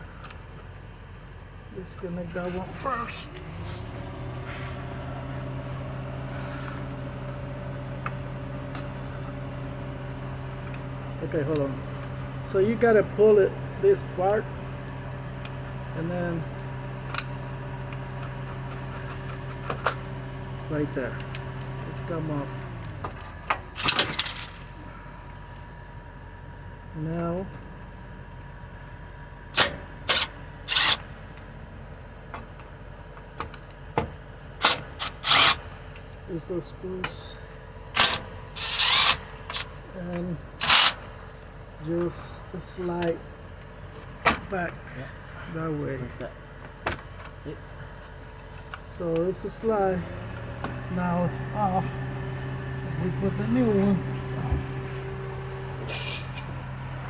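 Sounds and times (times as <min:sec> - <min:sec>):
low mechanical hum: 0:00.0 - 0:57.0
scraping and clattering hand work: 0:55.8 - 0:57.0.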